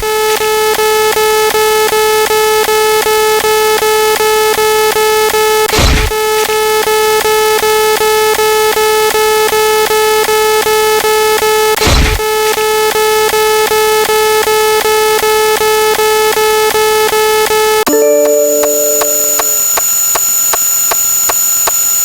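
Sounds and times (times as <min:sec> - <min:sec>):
pulsing buzzy synthesized tone: 0:17.9 - 0:20.2.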